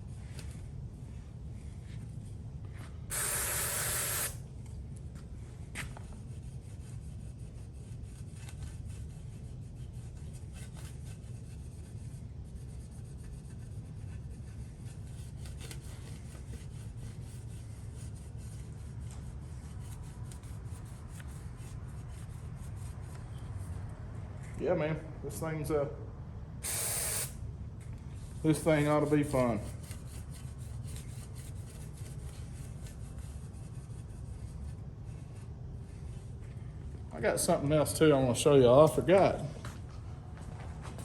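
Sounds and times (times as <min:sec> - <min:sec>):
steady low hum: 0:00.0 - 0:41.0
loud hiss: 0:26.6 - 0:27.4.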